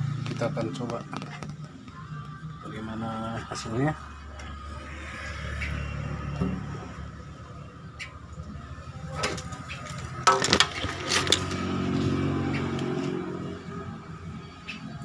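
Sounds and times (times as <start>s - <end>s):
knocks and clatter: 9.3s - 11.7s.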